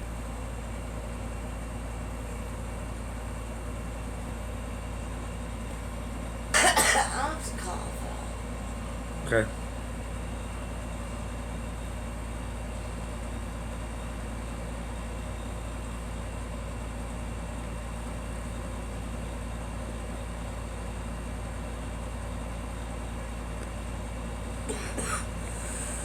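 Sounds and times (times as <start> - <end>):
low rumble with hiss: 24.6 - 26.0.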